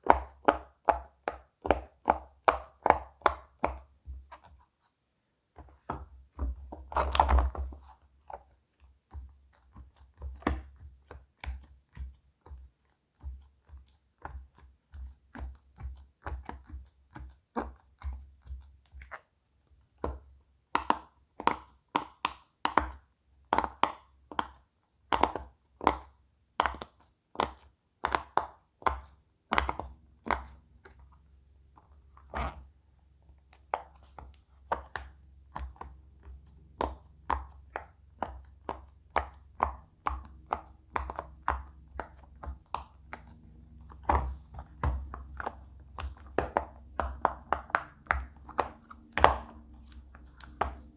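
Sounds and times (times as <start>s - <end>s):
fidget toy bubbles popping: 34.7s - 50.9s.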